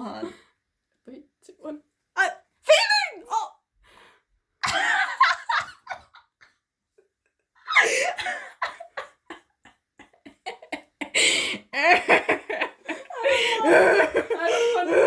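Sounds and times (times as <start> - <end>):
people laughing and gasping: 7.7 - 8.7, 11.0 - 15.0.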